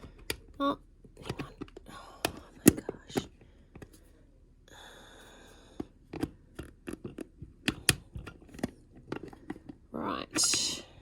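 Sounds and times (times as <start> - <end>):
plastic clicks and taps: 1.1 - 3.9.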